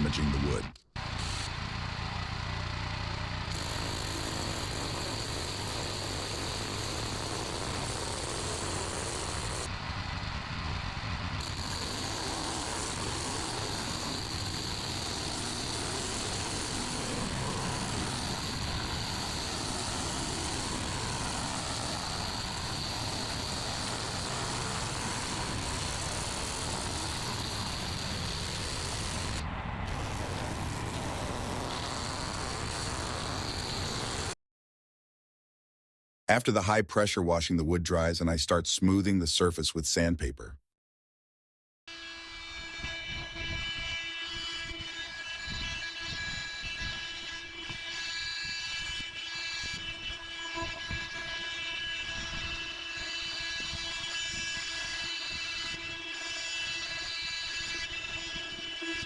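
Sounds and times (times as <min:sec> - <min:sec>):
pressure washer motor humming: 0:01.0 - 0:09.7, 0:11.4 - 0:34.3.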